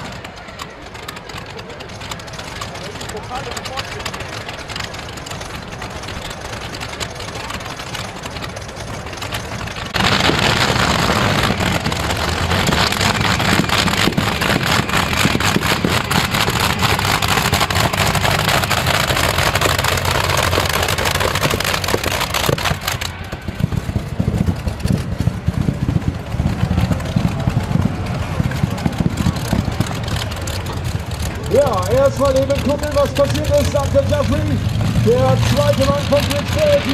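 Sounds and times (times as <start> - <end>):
pulling tractor engines roaring: 0.0 - 36.9.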